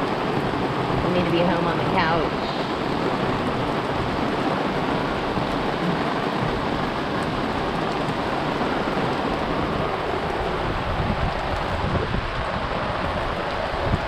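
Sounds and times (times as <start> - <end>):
rain hissing on a boat: 0.0 - 14.0.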